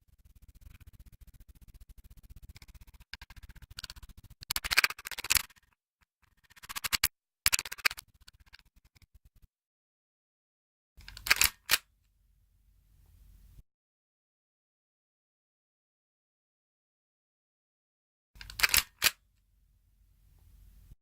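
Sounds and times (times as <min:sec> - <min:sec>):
rapid clicking: 0:00.1 - 0:09.4.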